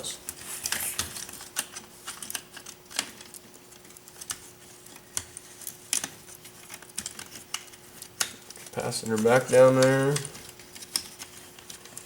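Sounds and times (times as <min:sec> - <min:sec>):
clicks and taps of small parts: 0:05.0 - 0:12.0.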